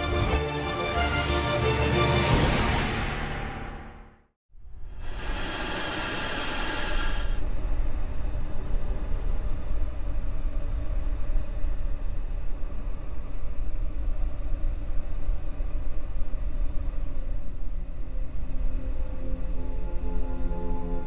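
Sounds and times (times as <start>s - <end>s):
faint hum: 4.6s - 21.0s
low rumble: 7.2s - 21.0s.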